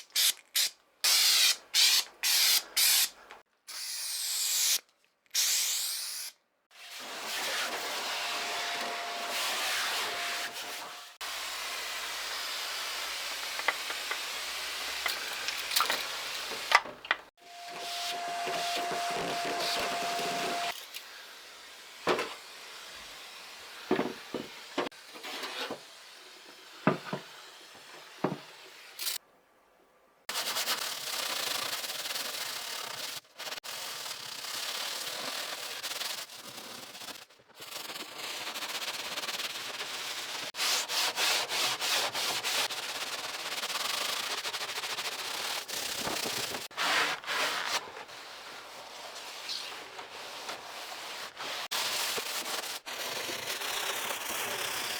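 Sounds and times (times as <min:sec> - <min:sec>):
sanding wood by hand: 0:17.7 - 0:20.8, 0:30.3 - 0:48.4.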